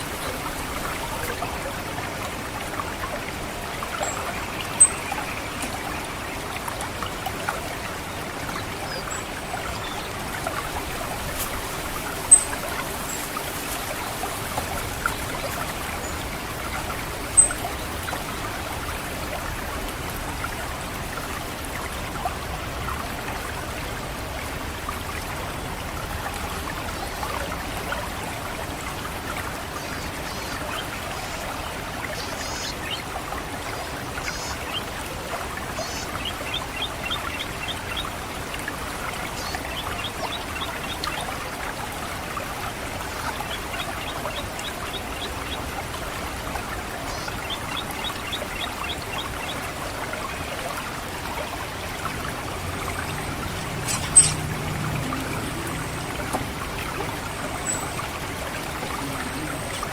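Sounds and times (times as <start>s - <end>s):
water trickling through channels: 0.0s - 59.9s
short high-pitched bird calls: 53.8s - 54.4s.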